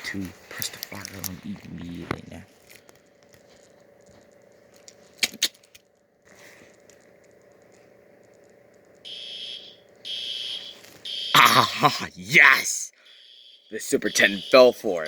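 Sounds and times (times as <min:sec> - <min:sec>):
fire alarm high-pitched pulses: 0:09.0 - 0:15.0.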